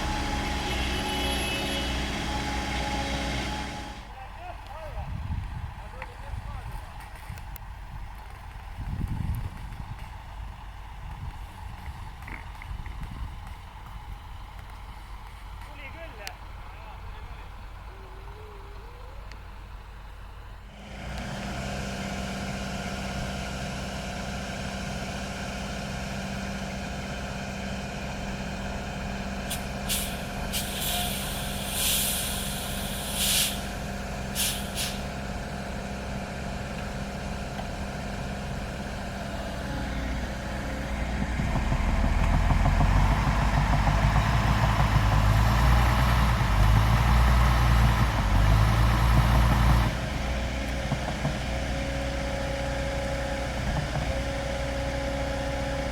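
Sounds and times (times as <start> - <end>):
heavy diesel machinery running: 0.0 - 7.0, 13.0 - 55.9
short hisses: 29.5 - 33.7, 34.3 - 35.1.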